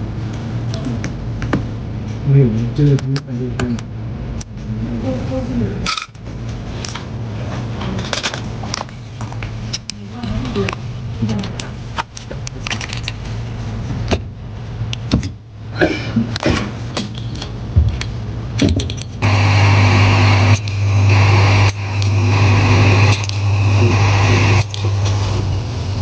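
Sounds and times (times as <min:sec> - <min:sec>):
electric blower rushing hum: 0:19.2 - 0:26.0.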